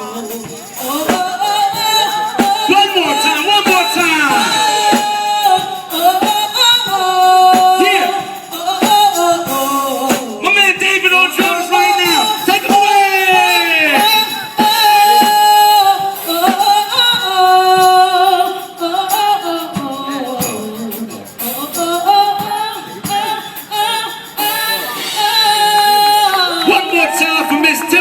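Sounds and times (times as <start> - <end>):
musical accompaniment: 0.0 - 18.3
woman singing: 0.0 - 28.0.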